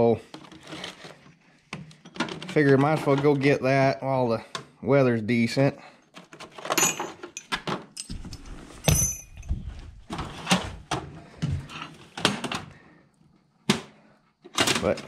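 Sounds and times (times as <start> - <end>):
knocks and thuds of handling: 6.6 - 12.7.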